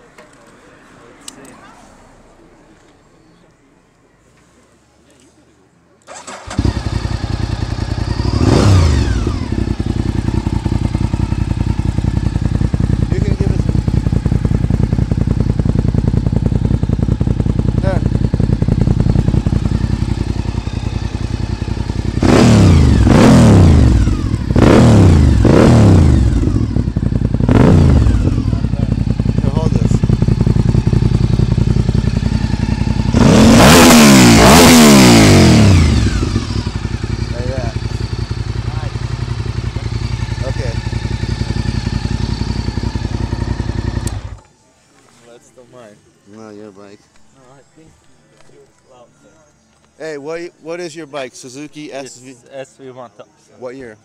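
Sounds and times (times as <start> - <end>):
motorcycle engine starting and idling: 6.0 - 44.6.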